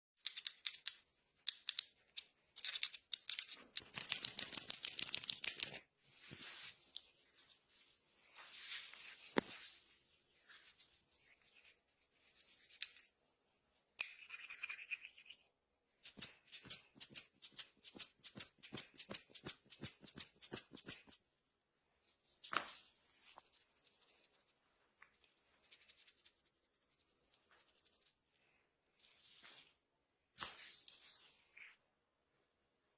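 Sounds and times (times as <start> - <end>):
hands rubbing hair and scalp: 3.8 - 11.8, 16.0 - 21.2.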